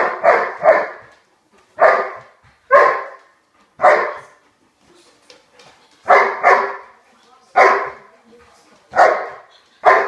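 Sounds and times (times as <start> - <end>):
dog barking: 0.0 - 1.1, 1.8 - 4.4, 6.0 - 6.9, 7.6 - 8.1, 8.9 - 10.0.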